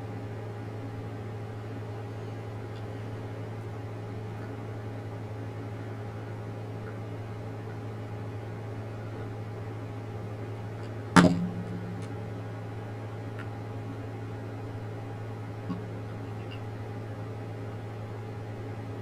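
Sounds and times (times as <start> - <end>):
low electrical hum: 0.0 - 19.0
sharp ringing knock: 11.2 - 12.1.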